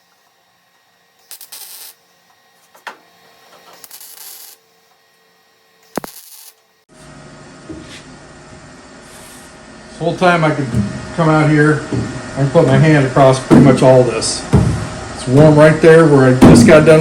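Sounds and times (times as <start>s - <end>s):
arc welder crackling: 0.0s - 5.2s, 5.8s - 6.9s
low background hum: 0.1s - 17.0s.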